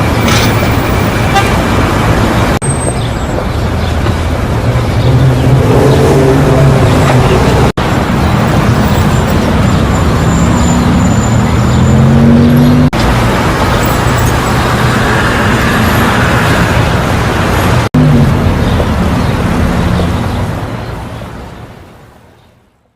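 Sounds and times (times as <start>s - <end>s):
traffic noise: 0.0s - 22.9s
engine revving up: 5.0s - 7.8s.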